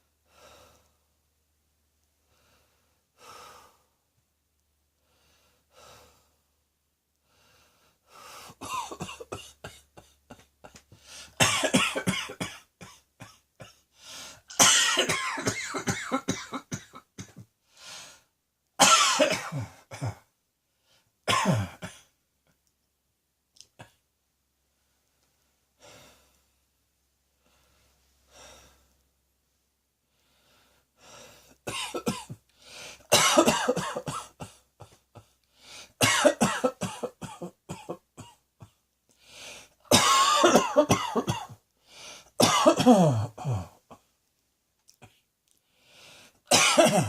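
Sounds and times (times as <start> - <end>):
faint breaths: 0.2 - 1.2, 2.2 - 4.1, 5.0 - 8.6, 10.9 - 11.4, 13.9 - 14.5, 17.6 - 18.4, 24.7 - 26.7, 27.3 - 29.1, 30.0 - 31.7, 32.5 - 33.1, 34.5 - 36.0, 39.1 - 39.8, 41.8 - 42.4, 45.1 - 46.5
person coughing: 8.6 - 10.8, 11.4 - 13.8, 14.5 - 17.4, 18.8 - 20.3, 21.3 - 22.1, 31.7 - 32.4, 33.1 - 35.3, 36.0 - 38.8, 39.9 - 41.6, 42.4 - 43.8, 46.5 - 47.0.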